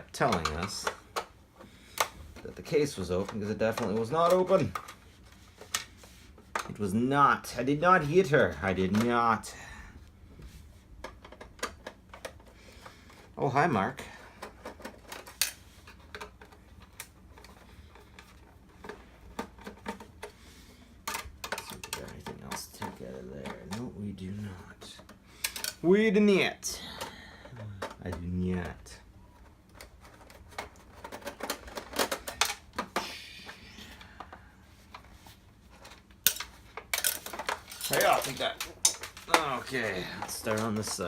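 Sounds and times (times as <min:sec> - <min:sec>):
plastic parts clicking and clattering: 0:00.0 - 0:07.0, 0:07.7 - 0:09.5, 0:11.0 - 0:25.9, 0:26.7 - 0:41.0
clicks of projector parts handled: 0:25.0 - 0:25.8, 0:29.7 - 0:33.6, 0:35.8 - 0:41.0.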